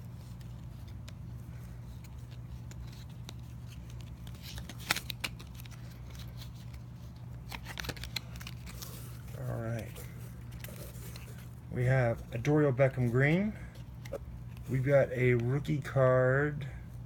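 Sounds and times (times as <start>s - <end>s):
steady low hum: 0.0s - 17.0s
card wrapper crinkling and clicking: 0.1s - 11.6s.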